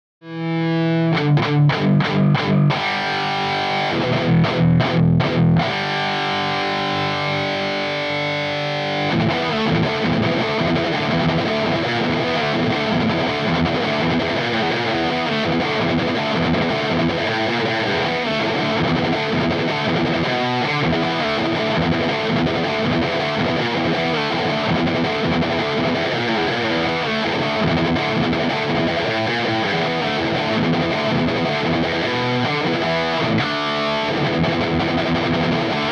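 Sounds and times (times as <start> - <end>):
distorted electric guitar: 0.2 - 35.9.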